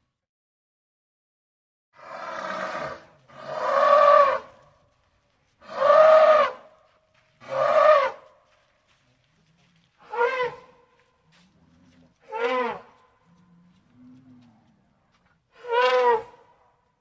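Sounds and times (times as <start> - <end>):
elephant trumpeting: 15.6 - 16.4.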